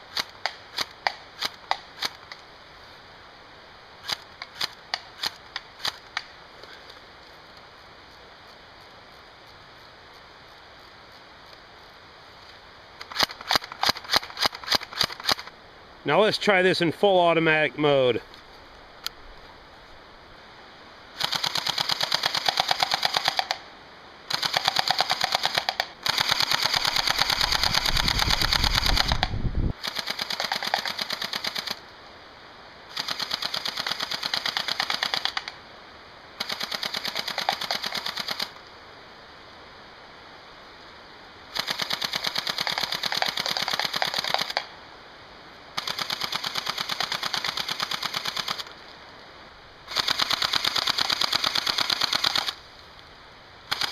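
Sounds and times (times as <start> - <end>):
airsoft gun full auto rattle: 0.1 - 2.4, 4.0 - 6.3, 13.0 - 15.5, 21.2 - 23.6, 24.3 - 31.8, 32.9 - 35.6, 36.4 - 38.6, 41.5 - 44.7, 45.8 - 48.7, 49.9 - 52.6, 53.7 - 53.9.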